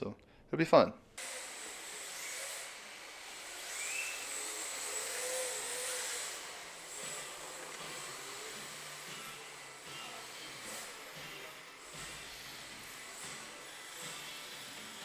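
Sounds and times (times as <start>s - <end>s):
electric motor whine: 1.2s - 11.4s.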